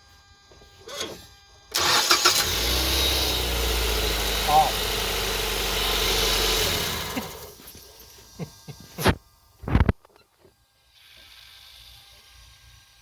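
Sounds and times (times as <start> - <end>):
car engine running down: 1.8 - 7.7.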